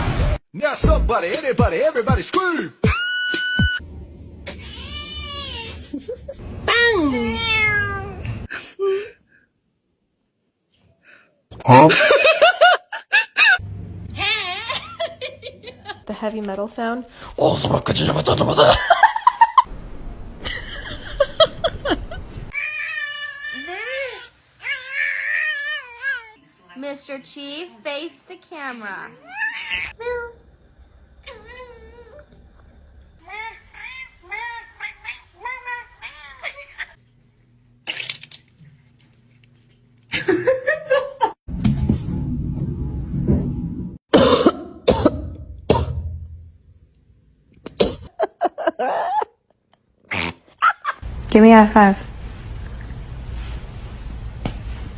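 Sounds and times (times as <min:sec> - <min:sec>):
cat meowing: 0:07.1 - 0:08.4
person coughing: 0:44.1 - 0:46.0, 0:47.7 - 0:48.1.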